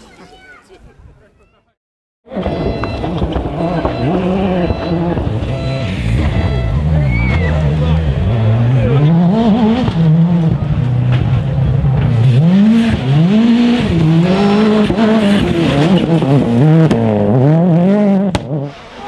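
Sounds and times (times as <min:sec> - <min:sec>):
rally car engine revving hard: 0:02.3 - 0:19.0
sharp crack: 0:18.3 - 0:18.6.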